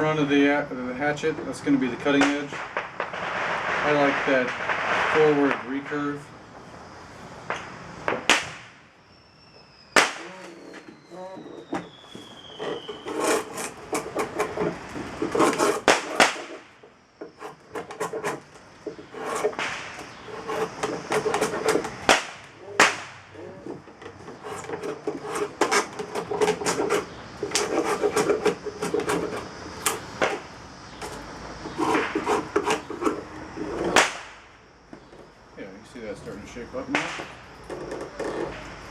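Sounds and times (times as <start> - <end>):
drawknife scraping wood: 12.5 - 16.6, 17.2 - 22.1, 23.4 - 30.4, 31.0 - 34.0, 37.6 - 38.7.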